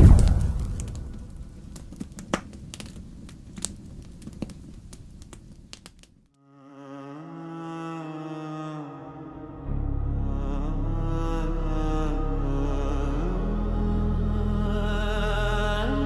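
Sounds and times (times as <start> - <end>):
deep boom: 0.0 - 1.9
low rumble: 0.0 - 2.7, 9.2 - 16.0
sharp crackles: 0.0 - 6.3
low bowed-string drone: 6.6 - 16.0.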